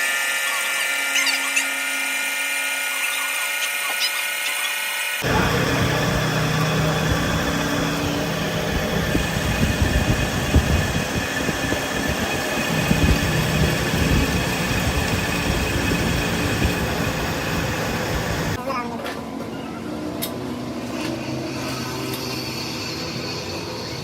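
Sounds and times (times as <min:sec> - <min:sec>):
machine rumbling: 0:00.2 - 0:18.6.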